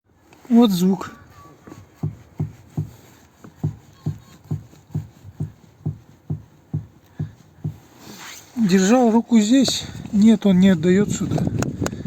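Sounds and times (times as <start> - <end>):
suspension strut knocking: 1.7 - 8.0.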